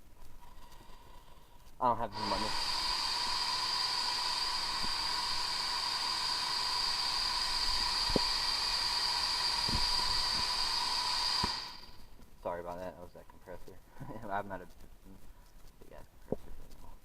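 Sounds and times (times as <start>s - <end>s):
air compressor hissing and whining: 2.0s - 12.2s.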